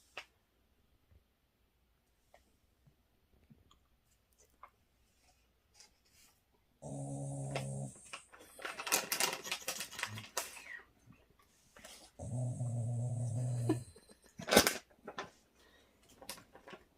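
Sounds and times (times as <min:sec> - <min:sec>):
dog grumbling: 0:06.8 - 0:08.3, 0:12.2 - 0:14.3.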